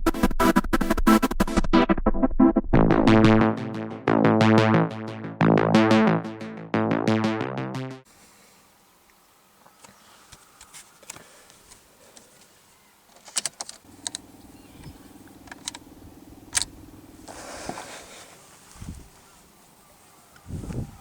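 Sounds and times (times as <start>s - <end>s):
sharp clicks: 13.2s - 15.9s, 16.5s - 16.7s
steady electric hum: 13.9s - 19.2s.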